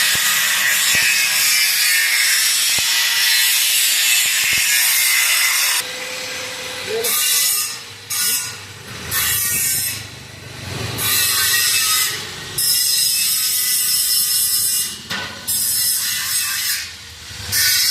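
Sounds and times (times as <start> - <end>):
arc welding crackling hiss: 0.0 - 5.8.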